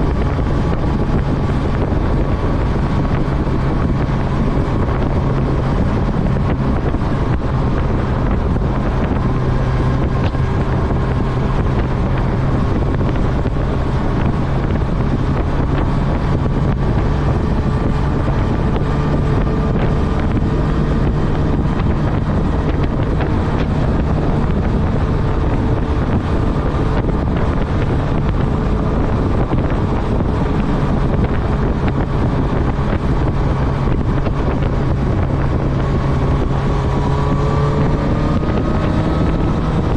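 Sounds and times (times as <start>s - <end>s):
motorcycle engine running: 0.0s - 39.9s
wind rushing over microphone: 0.0s - 39.9s.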